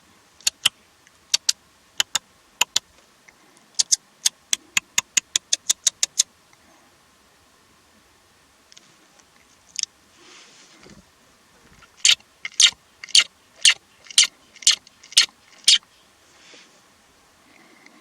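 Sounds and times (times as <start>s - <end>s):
sharp high clicks: 0.4s - 2.9s, 3.8s - 6.3s, 11.9s - 15.8s.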